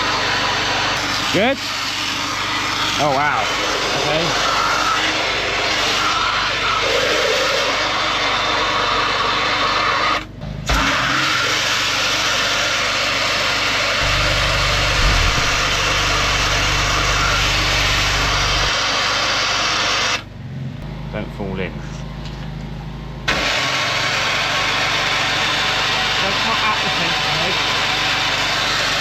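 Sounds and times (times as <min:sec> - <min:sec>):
drain-cleaning machine running: 0:00.0 - 0:21.5, 0:22.2 - 0:29.0
low hum: 0:13.9 - 0:18.8.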